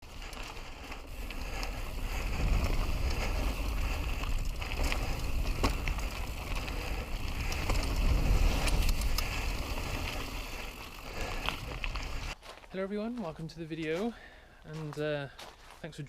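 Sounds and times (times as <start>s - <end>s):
wind buffeting microphone: 0.0s - 12.4s.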